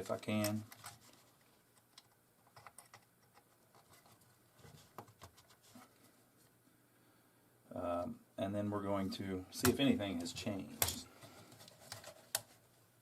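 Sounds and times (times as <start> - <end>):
small clicks and taps of handling: 1.8 - 4.2.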